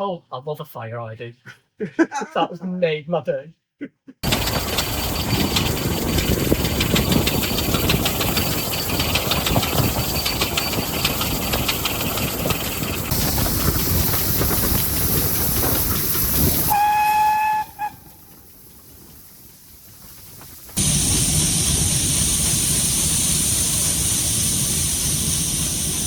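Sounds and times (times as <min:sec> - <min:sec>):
wheels rattling clicks: 0:04.2 - 0:16.8
steam locomotive rumble and hiss: 0:04.2 - 0:26.0
steam whistle blast: 0:16.7 - 0:18.2.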